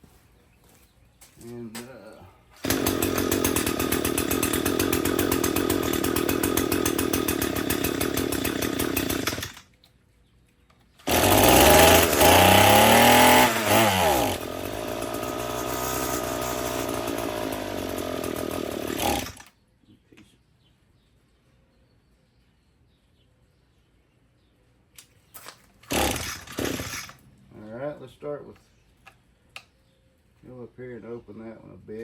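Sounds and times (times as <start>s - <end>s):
string trimmer engine running: 2.6s - 9.6s, 11.0s - 19.5s, 25.9s - 27.2s.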